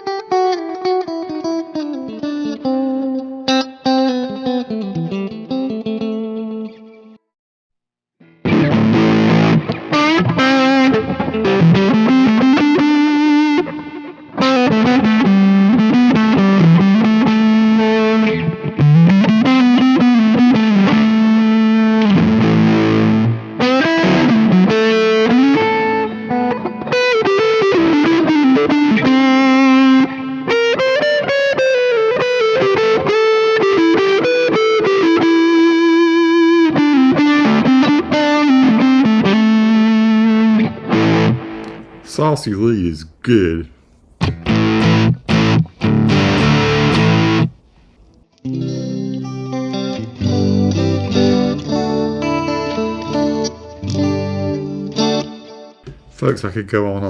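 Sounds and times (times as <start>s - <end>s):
distorted electric guitar lead: 8.3s - 26.6s, 44.2s - 48.2s.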